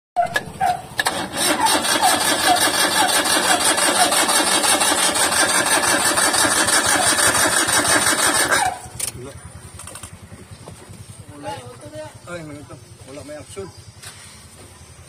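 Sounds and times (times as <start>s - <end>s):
engine cranking on starter motor: 0.2s - 10.4s.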